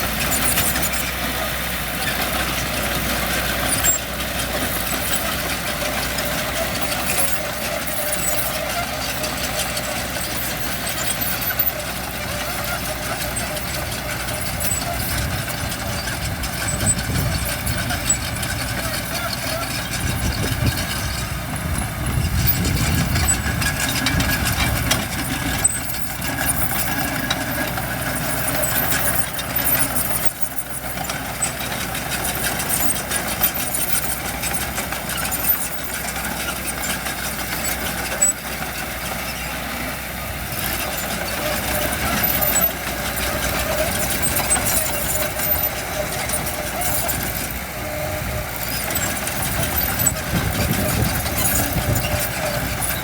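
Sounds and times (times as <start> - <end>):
heavy machinery diesel engines running: 0.0 - 53.0
heavy low rumble: 15.1 - 26.7.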